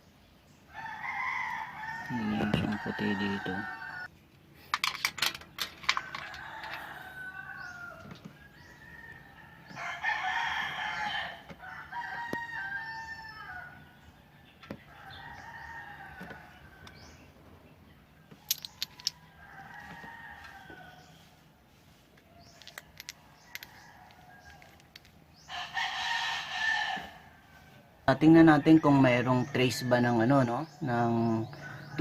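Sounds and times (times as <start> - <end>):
rooster crowing: 0.7 - 4.1, 5.9 - 13.8, 14.9 - 17.1, 18.5 - 21.4, 22.5 - 27.8, 31.4 - 32.0.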